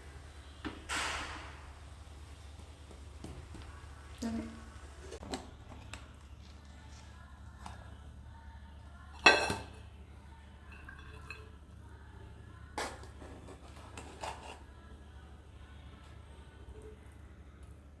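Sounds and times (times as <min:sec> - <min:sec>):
spoon clinking on dishware: 0:09.2 - 0:09.8, 0:10.7 - 0:11.6.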